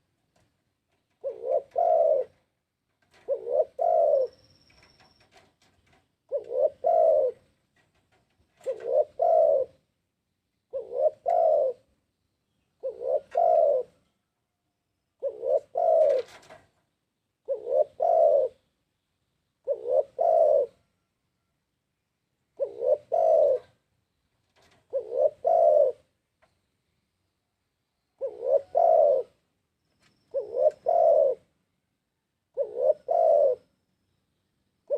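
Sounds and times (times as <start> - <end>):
dove cooing: 1.1 - 9.9, 10.7 - 11.9, 12.8 - 14.0, 15.2 - 16.6, 17.4 - 18.6, 19.6 - 21.1, 22.5 - 23.8, 24.6 - 26.1, 28.2 - 29.4, 30.1 - 31.6, 32.5 - 33.7.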